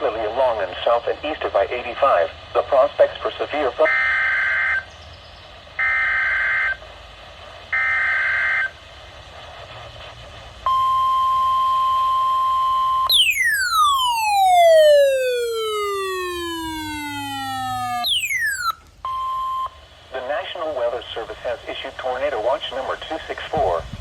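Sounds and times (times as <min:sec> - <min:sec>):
falling electronic pitch sweep: 0:13.1 - 0:18.8
steady alert tone: 0:13.1 - 0:18.8
warbling digital data bursts: 0:13.1 - 0:18.8.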